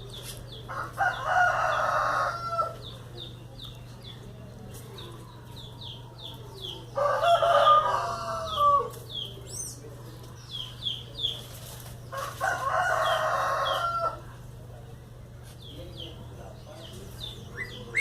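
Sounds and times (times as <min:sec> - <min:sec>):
rooster crowing: 0:00.7 - 0:02.8, 0:07.0 - 0:08.9, 0:12.2 - 0:14.3.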